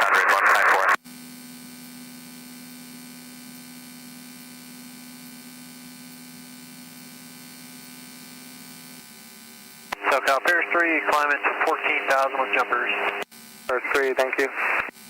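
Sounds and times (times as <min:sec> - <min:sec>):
steady electrical hum: 0:05.0 - 0:15.0.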